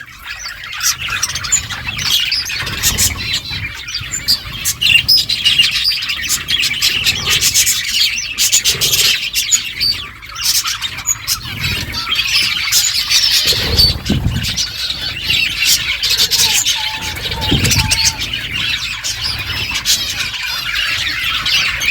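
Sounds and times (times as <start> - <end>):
budgerigars chirping and chattering: 0.0 - 21.9
low rumbles: 13.2 - 19.0.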